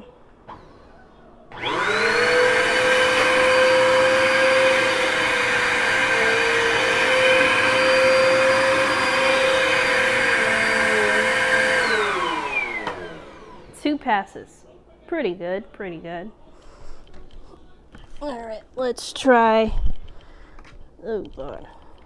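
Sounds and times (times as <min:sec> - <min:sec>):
vacuum cleaner motor whine: 0:01.5 - 0:13.8
vacuum sucking up cereal: 0:01.6 - 0:13.7.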